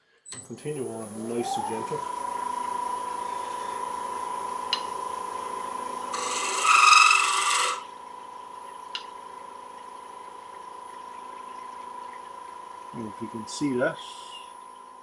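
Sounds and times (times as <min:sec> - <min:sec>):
wood lathe whine: 0:00.8 - 0:08.0
ringing squeal of wood: 0:06.1 - 0:07.9
tool rasping scrape on wood: 0:06.2 - 0:07.9.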